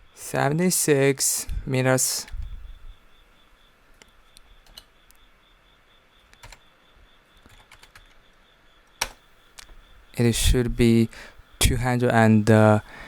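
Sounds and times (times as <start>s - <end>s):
faint high-pitched hum: 0.0s - 13.0s
computer mouse clicks: 7.4s - 8.2s, 8.9s - 9.8s.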